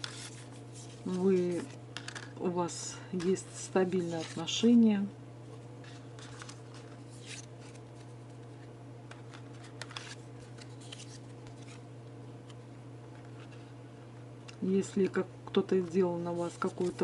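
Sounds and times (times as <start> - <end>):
cards being shuffled: 0.0 - 2.3, 3.2 - 4.8, 5.8 - 11.8, 15.8 - 17.0
low electrical hum: 0.0 - 17.0.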